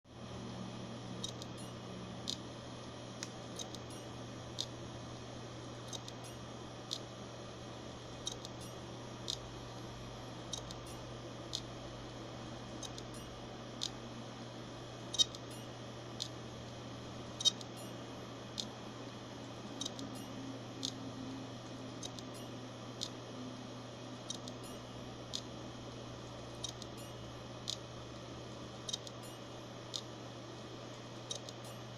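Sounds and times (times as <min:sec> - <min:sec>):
hard drive humming: 0:00.1 - 0:31.9
hard drive clicks: 0:01.0 - 0:31.9.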